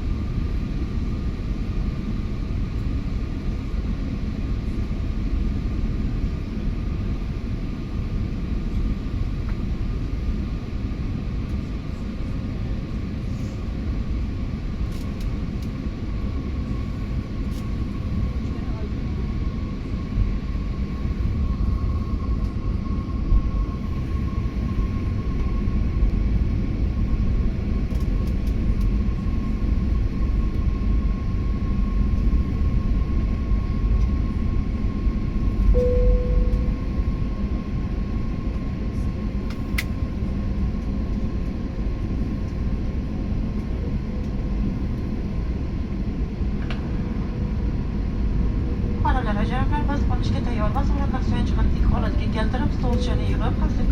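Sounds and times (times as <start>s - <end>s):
jet engine and airflow rumble: 0.0s - 53.9s
faint steady whine: 29.2s - 39.2s, 41.4s - 53.9s
low steady hum: 34.2s - 40.4s, 44.0s - 53.9s.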